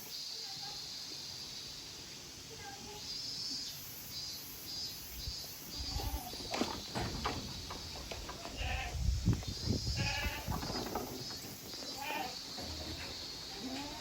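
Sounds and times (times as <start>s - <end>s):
knocks and thumps: 6.4s - 11.8s
goats bleating: 8.3s - 9.0s, 10.0s - 10.7s, 11.9s - 14.0s.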